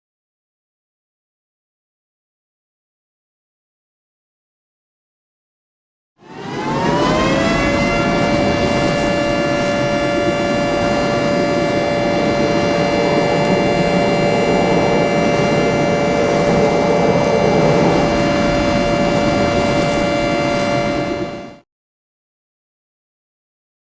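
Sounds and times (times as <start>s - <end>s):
rushing noise: 6.2s - 21.6s
warning siren wailing: 6.2s - 21.6s.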